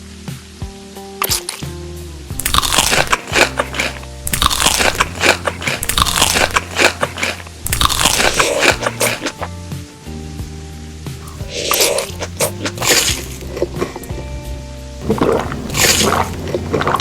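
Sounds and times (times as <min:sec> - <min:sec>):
crunchy food being chewed: 0:02.4 - 0:09.5, 0:11.2 - 0:14.2, 0:15.0 - 0:17.0.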